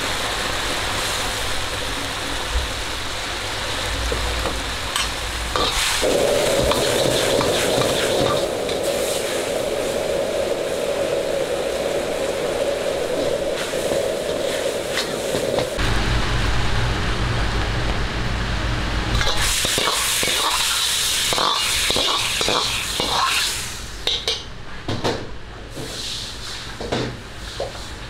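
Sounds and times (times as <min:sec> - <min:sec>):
food sizzling in a pan: 0:00.0 - 0:15.8, 0:19.2 - 0:24.4.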